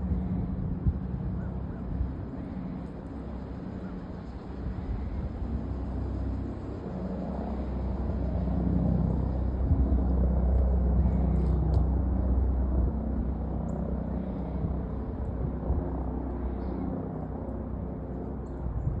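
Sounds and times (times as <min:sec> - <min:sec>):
helicopter rotor and engine rumble: 0:00.0 - 0:19.0.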